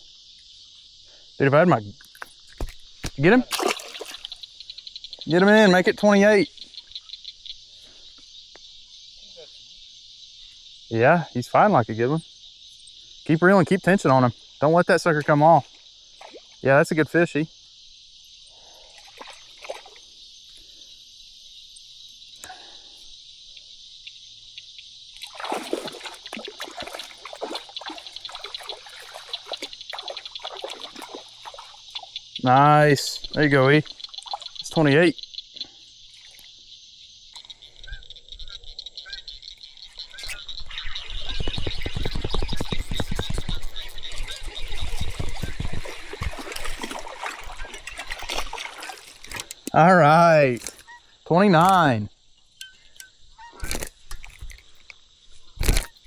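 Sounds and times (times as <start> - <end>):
insect chorus: 0.0 - 56.0
fish splashing at water surface: 2.5 - 4.5, 18.9 - 20.0, 25.2 - 32.2, 42.8 - 49.7.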